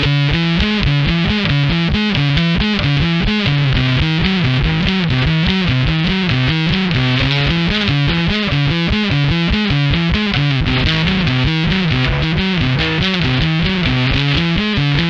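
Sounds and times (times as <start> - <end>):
distorted electric bass run: 0.0 - 15.0.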